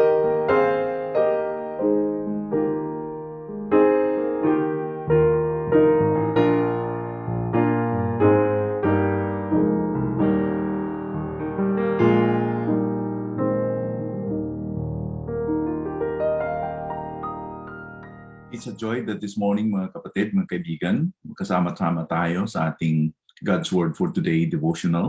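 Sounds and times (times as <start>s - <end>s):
gentle solo piano music: 0.0s - 18.6s.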